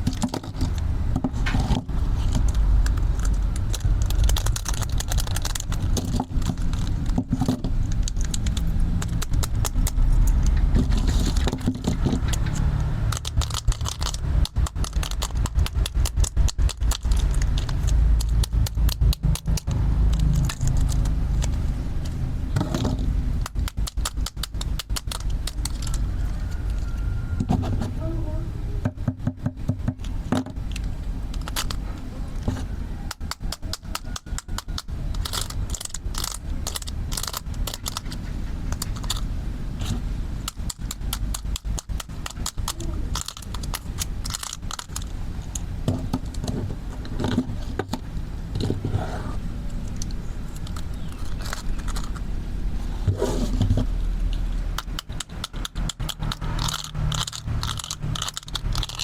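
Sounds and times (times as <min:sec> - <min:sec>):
hard plastic scraping: 0:00.0 - 0:28.2, 0:28.8 - 0:59.0
plastic toy tools clicking: 0:02.3 - 0:21.6, 0:22.7 - 0:27.0, 0:30.0 - 0:31.8, 0:33.1 - 0:46.5, 0:49.9 - 0:52.2, 0:54.7 - 0:59.0.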